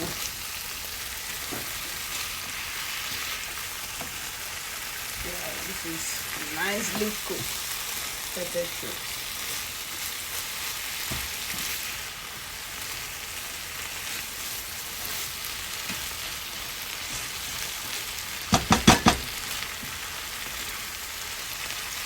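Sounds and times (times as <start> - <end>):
shrimp sizzling in pan: 0.0 - 22.0
knocks: 18.5 - 19.3.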